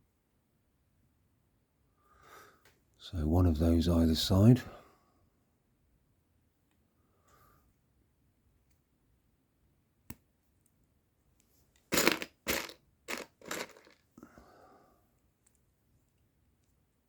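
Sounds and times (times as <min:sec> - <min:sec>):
plastic pieces scraping: 0:11.9 - 0:14.0
plastic pieces clicking: 0:12.0 - 0:14.0
plastic pieces rustling: 0:12.0 - 0:14.0.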